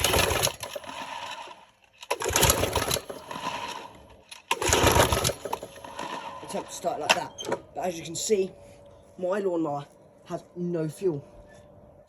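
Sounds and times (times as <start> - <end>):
lawnmower engine pull-start: 0.0 - 8.4.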